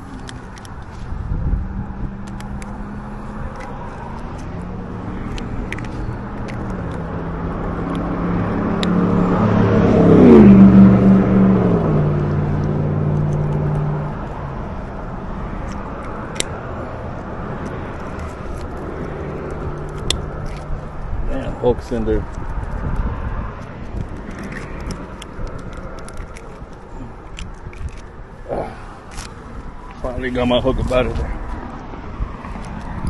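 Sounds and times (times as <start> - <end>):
vehicle engine passing by: 1.1 - 27.2.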